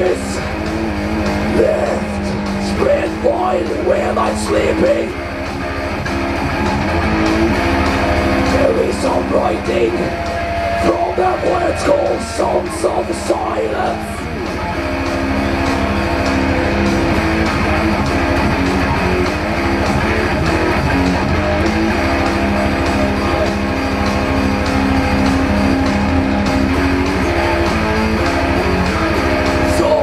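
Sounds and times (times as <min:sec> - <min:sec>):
electric guitar held chords: 0:00.0 - 0:30.0
metal backing band: 0:00.0 - 0:30.0.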